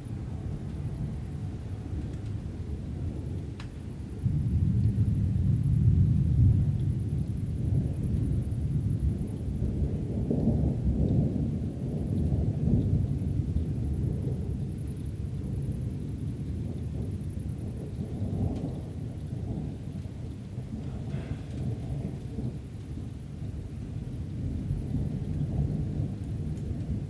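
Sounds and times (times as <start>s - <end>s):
thunder rumbling: 15.3s - 27.0s.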